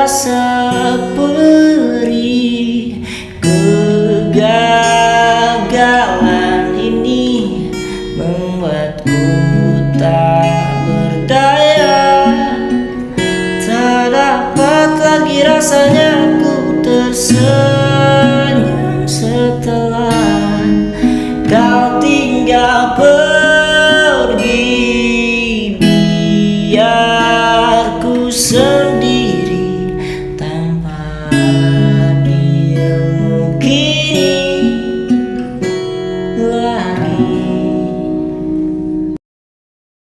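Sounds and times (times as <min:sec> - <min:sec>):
sliding lead melody: 0:00.0 - 0:39.2
strummed acoustic guitar: 0:00.0 - 0:39.2.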